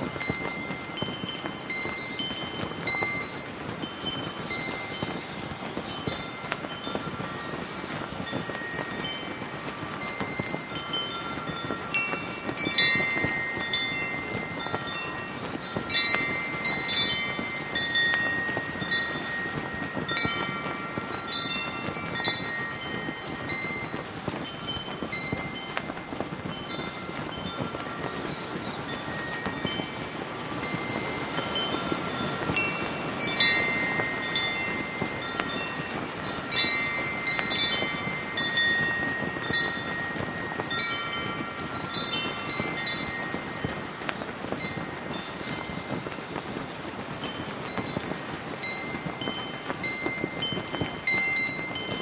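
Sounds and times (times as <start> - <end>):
brass wind chimes ringing: 0.0 - 52.0
flag flapping: 0.0 - 52.0
wind rushing: 7.4 - 46.1.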